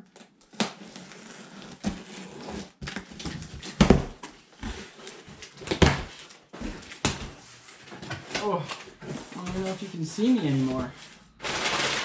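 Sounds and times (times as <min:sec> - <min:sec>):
cardboard box knocks and rustles: 0:01.8 - 0:04.9.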